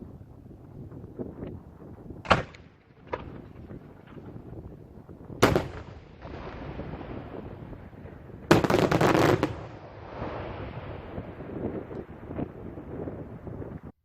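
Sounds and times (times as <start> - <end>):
fireworks cracking: 1.2 - 12.8
firework bang: 5.4 - 7.7, 8.4 - 12.5.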